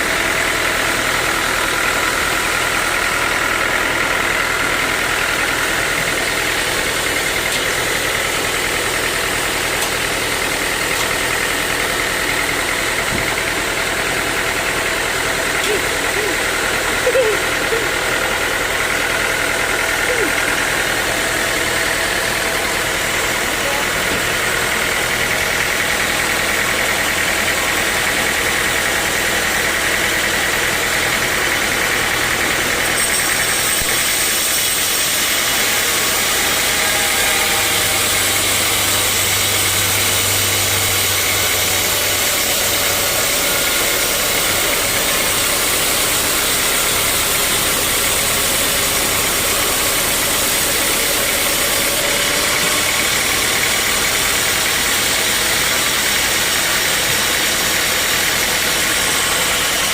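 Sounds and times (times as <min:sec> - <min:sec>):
low engine hum: 0:00.0 - 0:32.9
sawmill saw running: 0:00.0 - 0:59.9.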